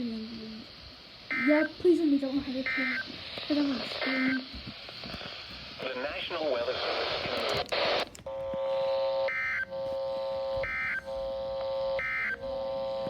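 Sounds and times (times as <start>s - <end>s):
steady buzzing tone: 0.0s - 5.6s, 8.3s - 13.0s
high warbling data bursts: 1.3s - 4.5s.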